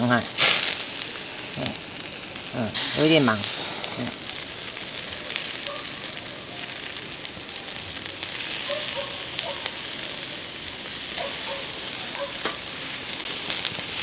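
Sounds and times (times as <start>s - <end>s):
meat sizzling on a grill: 0.0s - 14.0s.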